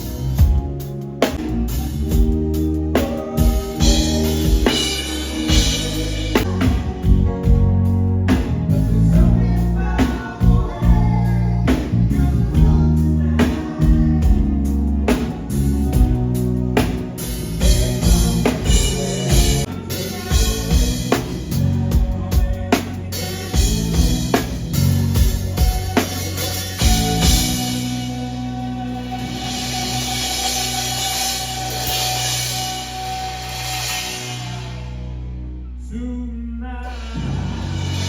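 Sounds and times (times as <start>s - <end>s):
drum kit hitting steadily: 0.0s - 9.4s, 10.0s - 28.4s
person singing: 0.0s - 38.0s
pop band music: 0.0s - 38.0s.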